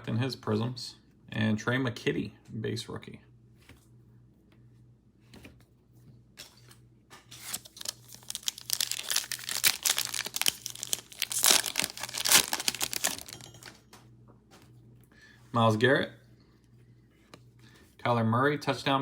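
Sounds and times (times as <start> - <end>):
plastic wrapper tearing and crinkling: 7.4 - 13.7.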